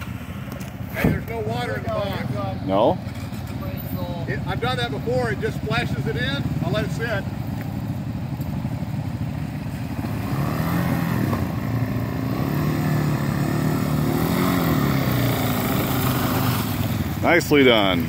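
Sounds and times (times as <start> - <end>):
off-road vehicle engine revving: 0.0 - 18.0.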